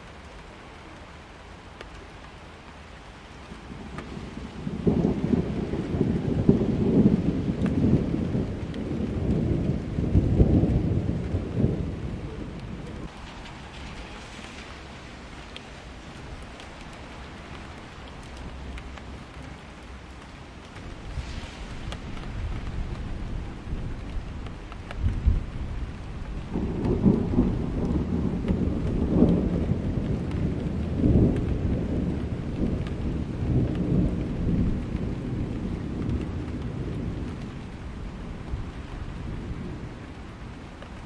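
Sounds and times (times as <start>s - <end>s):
steady rain: 0.0s - 41.0s
rolling thunder: 3.7s - 19.3s, 20.8s - 41.0s.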